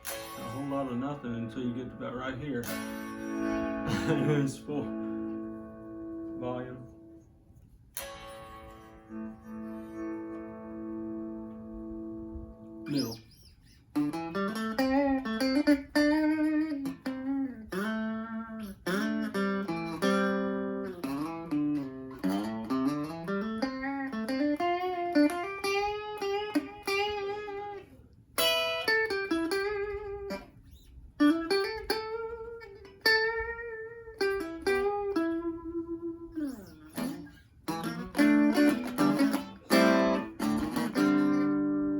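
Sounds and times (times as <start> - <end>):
electric guitar through amp: 0.0 - 7.2, 8.0 - 30.5, 31.2 - 41.9.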